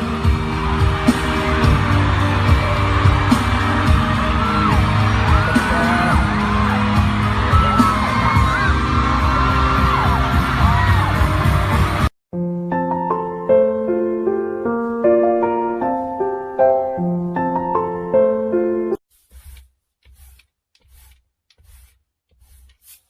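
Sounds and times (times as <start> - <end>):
loud music: 0.0 - 12.1
voices whooping and yelling: 0.6 - 11.6.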